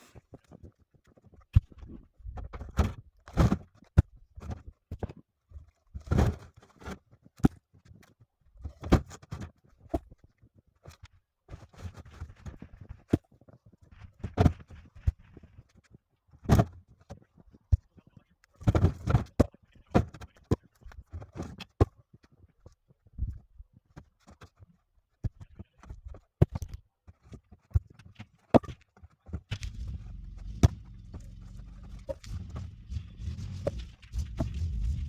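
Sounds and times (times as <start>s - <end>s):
scraping and shuffling: 29.5s - 35.0s.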